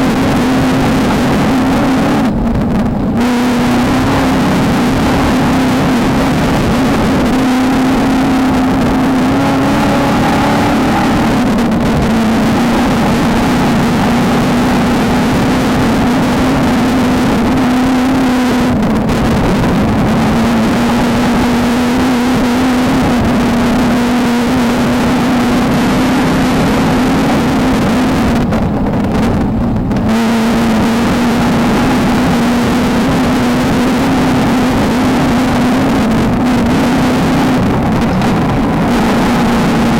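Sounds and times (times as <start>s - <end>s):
chassis and terrain rumble: 0.0s - 39.9s
race car engine at high revs: 0.0s - 39.9s.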